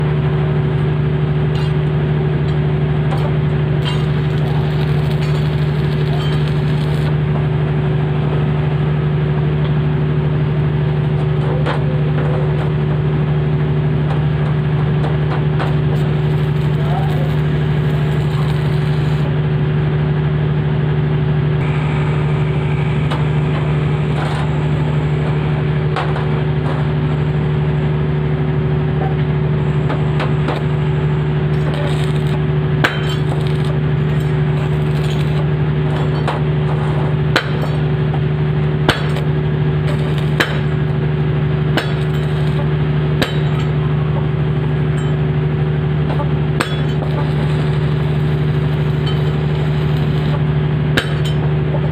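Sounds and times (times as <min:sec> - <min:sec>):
machine hum with crackling: 0:00.0 - 0:51.9.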